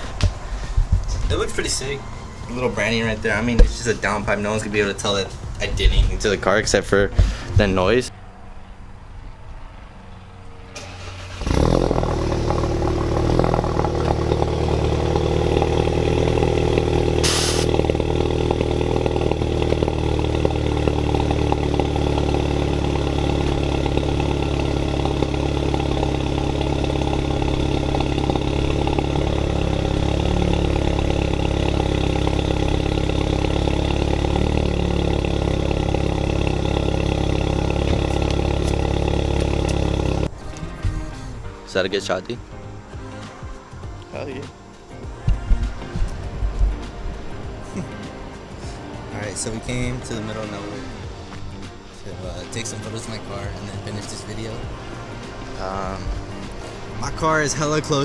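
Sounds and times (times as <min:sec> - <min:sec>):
car engine starting and idling: 0:00.0 - 0:43.3, 0:43.9 - 0:58.0
brief hiss: 0:17.2 - 0:17.8.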